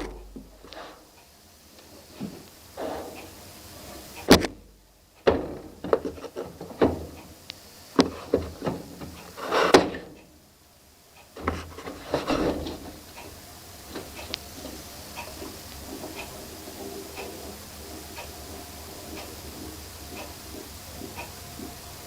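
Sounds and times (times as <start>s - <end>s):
sharp knocks and clicks: 4.2s - 7.3s, 11.4s - 13.3s
rubbing and scraping: 9.3s - 10.0s, 11.4s - 13.1s.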